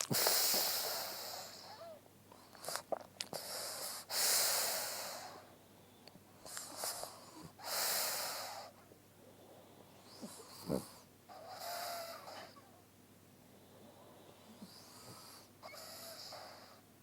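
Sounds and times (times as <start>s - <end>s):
dog snort: 0.0s - 5.4s, 6.5s - 8.7s, 10.0s - 12.7s, 14.4s - 16.8s
dog snoring and breathing: 0.0s - 5.5s, 6.3s - 12.8s, 13.6s - 16.9s.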